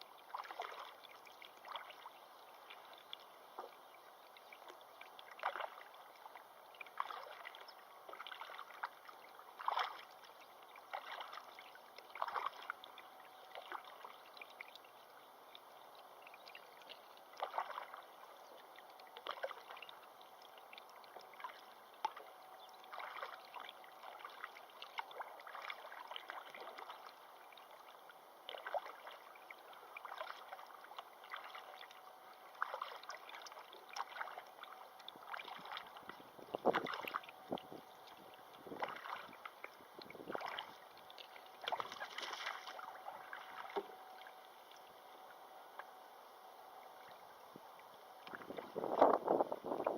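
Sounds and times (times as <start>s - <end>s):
rush of moving water: 0.0s - 3.8s, 4.6s - 14.8s, 20.7s - 44.4s
water splashing and lapping: 0.0s - 49.9s.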